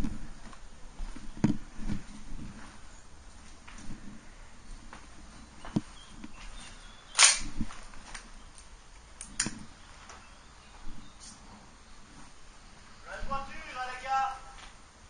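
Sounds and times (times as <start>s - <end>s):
airsoft gun shots: 7.2s - 7.6s.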